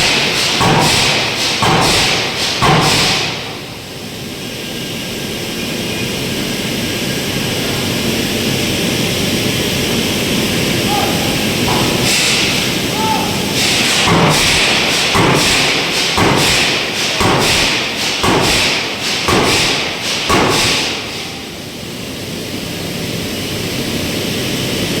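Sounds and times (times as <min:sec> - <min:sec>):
roar of shop machinery: 0:07.1 - 0:21.8
heavy hammer blows on metal: 0:10.9 - 0:21.4.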